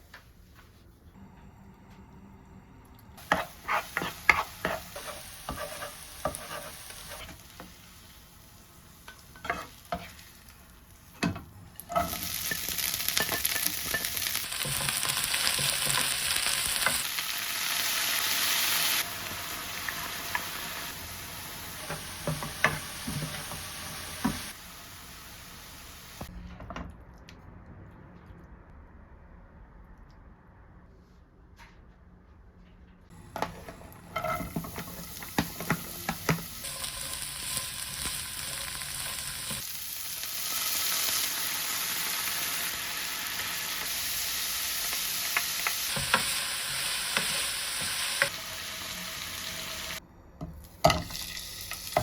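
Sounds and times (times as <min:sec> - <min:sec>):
food sizzling in a pan: 0:03.2 - 0:11.2, 0:11.8 - 0:26.3, 0:33.4 - 0:50.0, 0:50.9 - 0:52.0.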